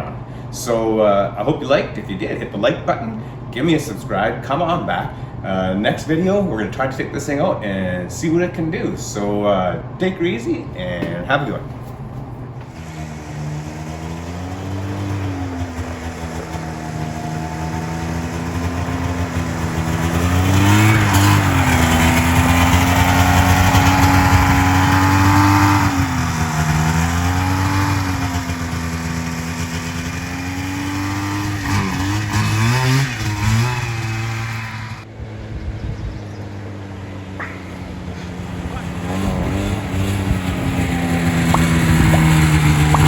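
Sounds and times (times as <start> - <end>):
two-stroke engine revving: 12.6 - 43.0.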